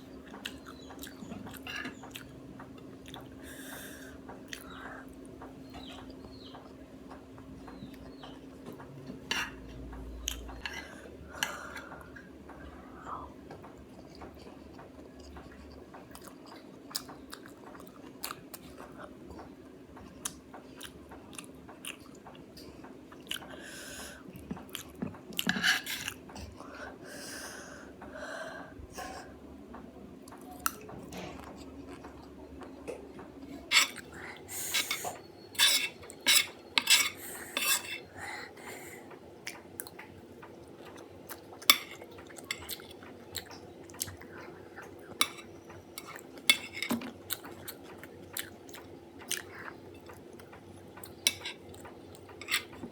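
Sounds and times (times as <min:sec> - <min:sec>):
chewing: 0:00.2 - 0:03.4, 0:13.6 - 0:23.6, 0:24.2 - 0:26.6, 0:30.3 - 0:52.9
cutlery clinking on a plate: 0:33.7 - 0:34.0, 0:34.7 - 0:38.0, 0:41.6 - 0:42.8, 0:45.1 - 0:47.6, 0:51.2 - 0:52.9.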